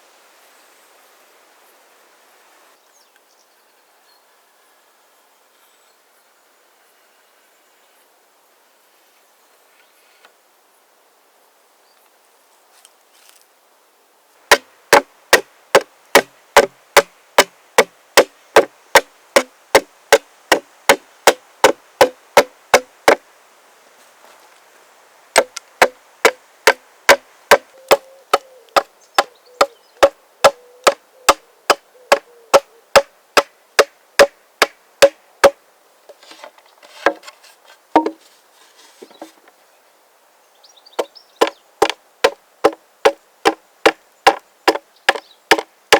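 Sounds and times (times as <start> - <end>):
axe chopping wood: 14.5 - 23.2, 25.4 - 28.9, 30.0 - 35.6, 38.0 - 38.2, 41.4 - 45.7.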